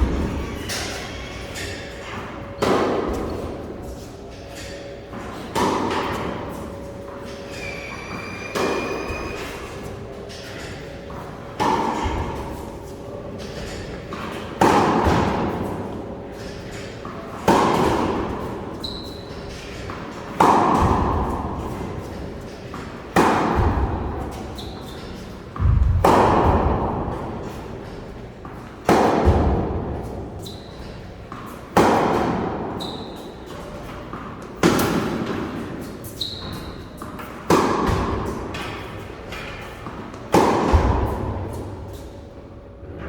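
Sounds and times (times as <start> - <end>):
balls struck hard echoing: 20.3 - 22.0, 22.8 - 24.8, 25.5 - 30.5, 37.4 - 39.4, 40.3 - 41.9.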